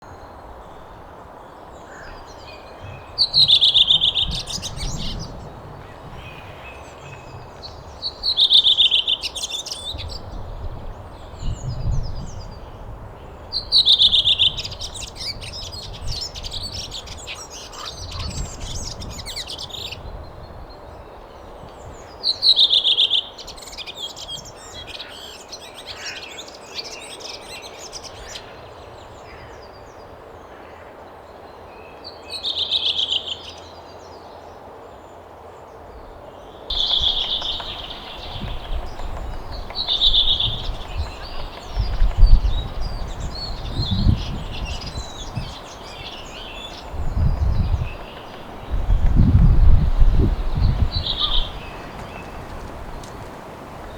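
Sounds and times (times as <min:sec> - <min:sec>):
birds calling and chattering: 0:00.1 - 0:20.0, 0:36.7 - 0:53.9.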